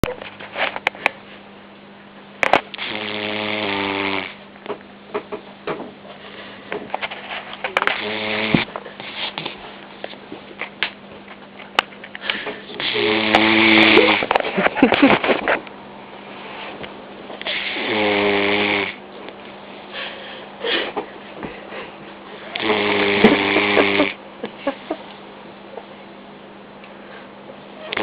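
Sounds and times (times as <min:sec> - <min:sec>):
puppy snoring: 0:02.8 - 0:04.4, 0:07.8 - 0:08.7, 0:12.7 - 0:14.4, 0:17.4 - 0:19.0, 0:22.4 - 0:24.2, 0:27.8 - 0:28.0.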